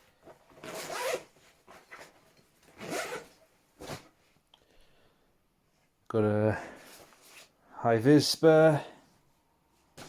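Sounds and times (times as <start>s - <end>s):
zipper being pulled open: 0.6s - 2.1s, 2.8s - 4.0s.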